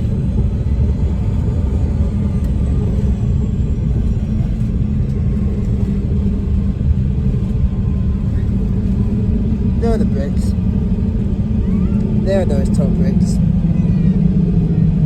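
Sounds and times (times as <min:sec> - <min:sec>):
jet cabin low rumble: 0:00.0 - 0:15.0
steady hum: 0:00.0 - 0:15.0.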